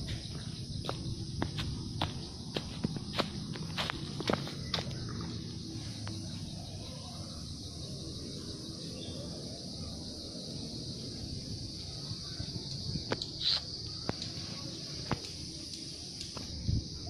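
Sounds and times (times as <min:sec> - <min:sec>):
insects chorus: 0:00.0 - 0:17.0.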